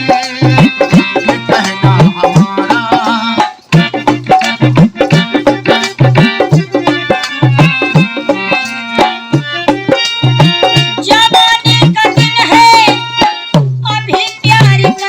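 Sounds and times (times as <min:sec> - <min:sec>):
sustained melody line: 0:00.0 - 0:11.3
hand drums: 0:00.0 - 0:15.0.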